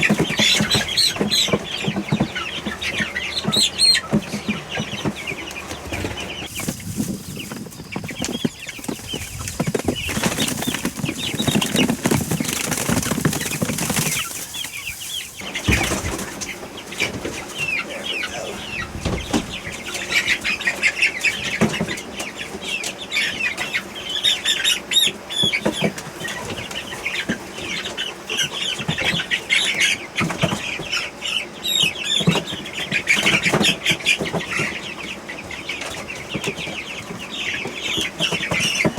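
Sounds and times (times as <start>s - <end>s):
wings flapping and scuffling: 0.0s - 31.2s, 32.1s - 38.9s
chicks peeping: 0.0s - 38.9s.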